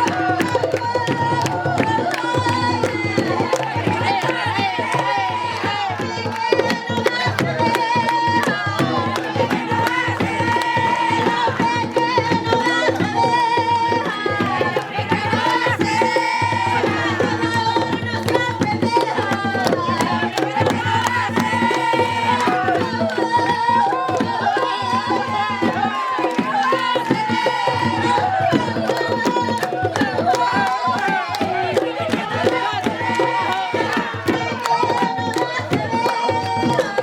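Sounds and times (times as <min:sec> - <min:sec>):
drums beating brisk rhythm: 0:00.0 - 0:37.0
women singing: 0:00.0 - 0:37.0.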